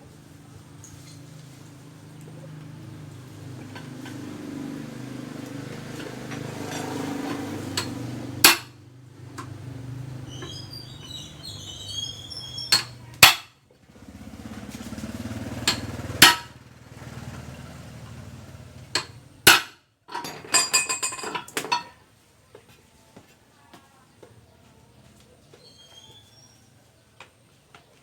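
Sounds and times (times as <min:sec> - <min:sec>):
clinks and clanks: 0:05.7 - 0:08.7, 0:12.1 - 0:13.5, 0:15.6 - 0:16.5, 0:18.9 - 0:22.0.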